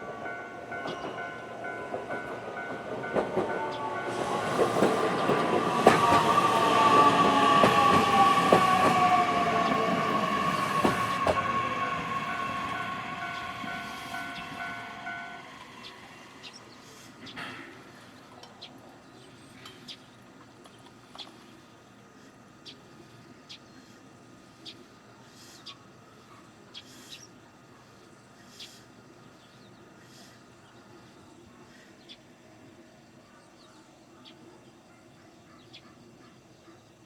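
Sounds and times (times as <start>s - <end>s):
train running noise: 0.0s - 18.8s
level crossing bell ringing: 11.6s - 15.5s.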